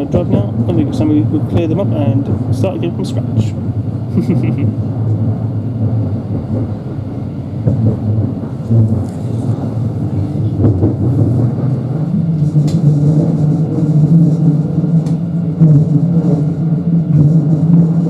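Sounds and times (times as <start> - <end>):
steady hum: 0.0 - 18.0
train wheels rumbling: 0.0 - 18.0.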